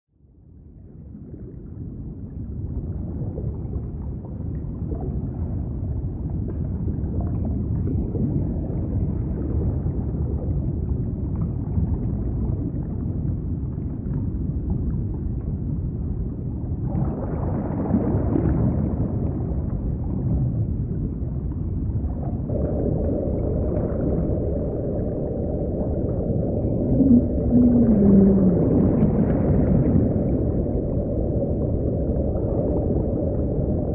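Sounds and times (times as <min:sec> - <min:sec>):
deep underwater rumble: 0:00.2 - 0:33.9
steady droning tone: 0:21.9 - 0:33.9
falling whale-like call: 0:26.4 - 0:29.7.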